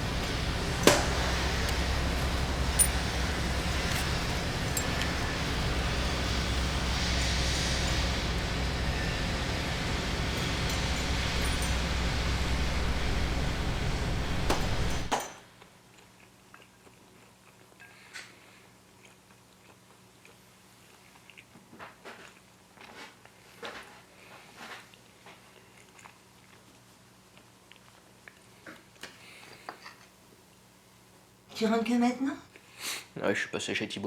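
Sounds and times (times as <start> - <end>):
loud mechanical noise: 0.0 - 15.2.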